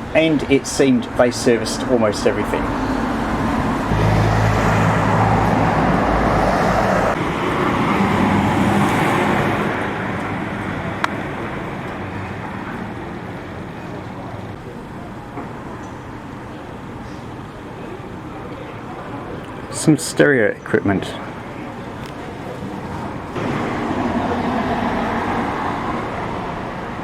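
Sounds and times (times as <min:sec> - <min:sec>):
vehicle passing by: 0:01.0 - 0:14.6, 0:23.4 - 0:27.0.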